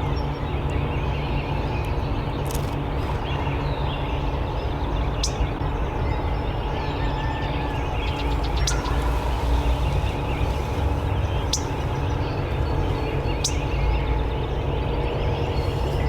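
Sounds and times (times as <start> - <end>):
low rumble: 2.8 - 16.0
faint bird calls: 7.2 - 16.0.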